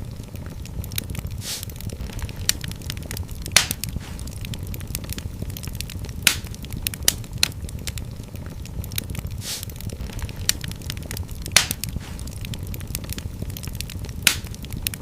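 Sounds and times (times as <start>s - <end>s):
fire crackles and pops: 0.0s - 15.0s
fire flames rumbling: 0.0s - 15.0s
brief hiss: 1.4s - 1.7s, 9.4s - 9.7s.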